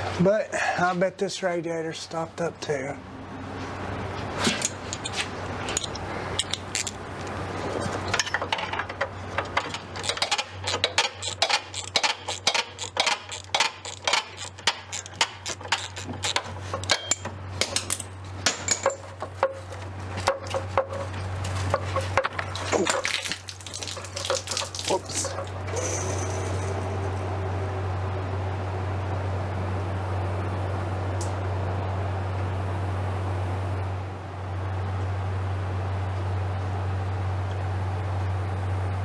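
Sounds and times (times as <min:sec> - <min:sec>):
steady low hum: 0:00.0 - 0:39.0
metallic clinks and taps: 0:04.6 - 0:07.3, 0:08.1 - 0:23.0.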